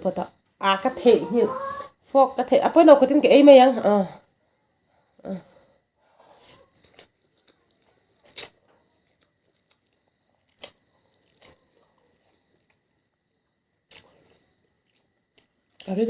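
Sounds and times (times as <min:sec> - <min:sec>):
wet chewing: 0:06.3 - 0:13.2, 0:13.8 - 0:16.0
food crunches: 0:06.4 - 0:13.1, 0:13.8 - 0:16.0.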